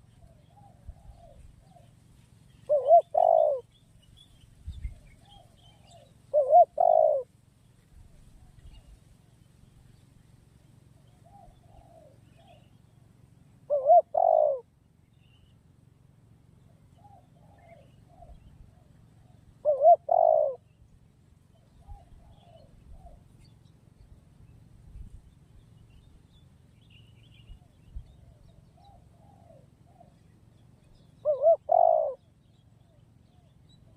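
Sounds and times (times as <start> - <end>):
dove cooing: 0.0 - 3.8, 4.8 - 7.4, 11.0 - 12.8, 13.6 - 14.8, 16.5 - 20.8, 21.5 - 23.5, 27.5 - 33.9.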